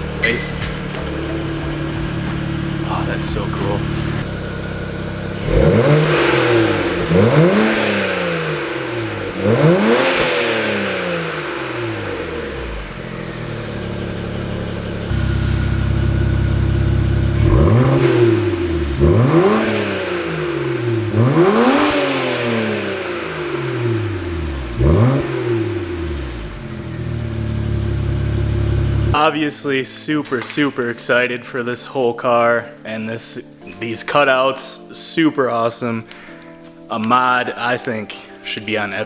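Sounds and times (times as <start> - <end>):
car engine revving and idling: 0.0 - 29.2.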